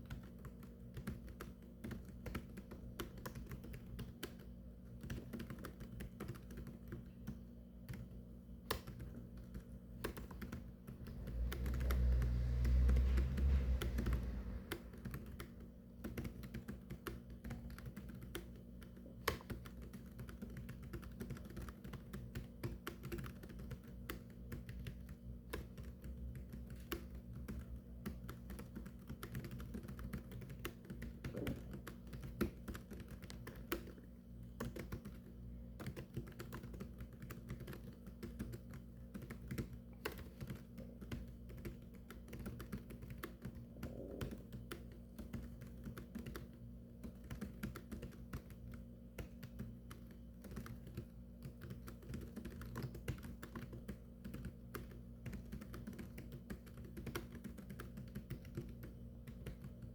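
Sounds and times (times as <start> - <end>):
typing on a keyboard: 0.0 - 59.9
deep low rumble: 11.0 - 15.1.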